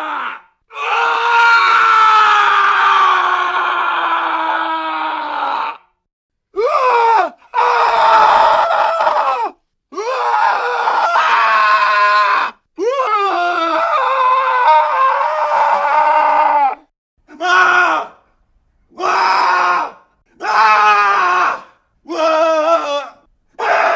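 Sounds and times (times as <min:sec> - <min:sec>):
man screaming: 0:00.0 - 0:05.9, 0:06.6 - 0:18.1.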